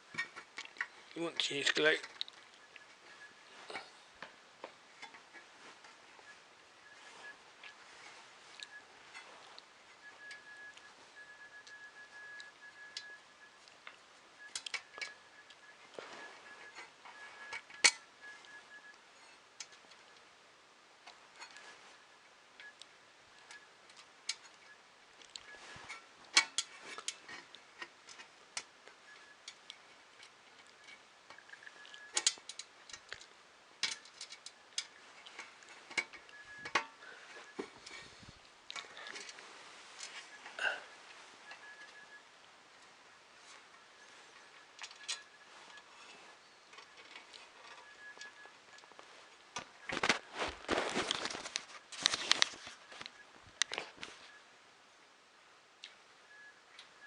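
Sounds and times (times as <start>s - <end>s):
faint high tone: 40.0s - 42.3s.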